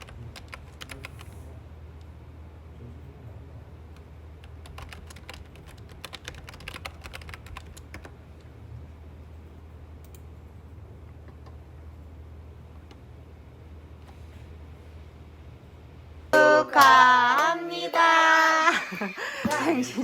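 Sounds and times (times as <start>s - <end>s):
computer keyboard typing: 0.0s - 1.3s, 4.4s - 8.2s
steady low hum: 0.0s - 20.0s.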